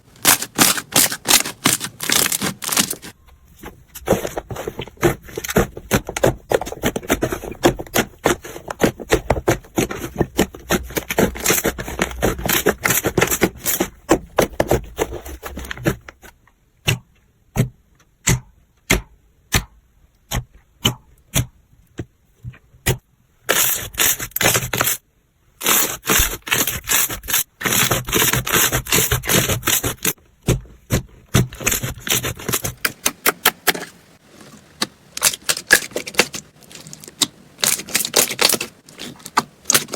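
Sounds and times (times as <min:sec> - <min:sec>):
slime crackling and popping: 0:00.1 - 0:03.1.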